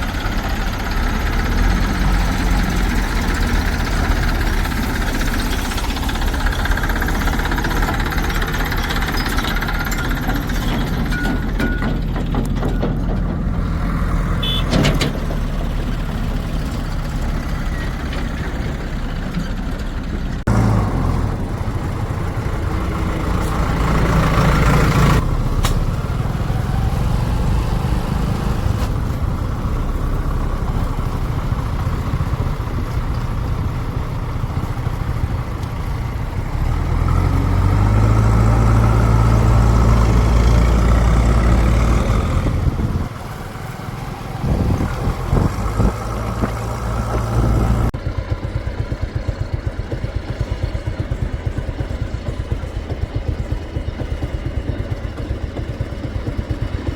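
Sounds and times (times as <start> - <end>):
backhoe loader engine: 0.0 - 56.9
diesel tractor engines running: 0.0 - 56.9.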